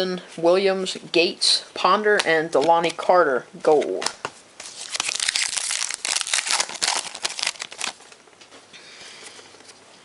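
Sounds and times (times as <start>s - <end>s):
card pack wrapper crinkling: 4.6s - 8.2s.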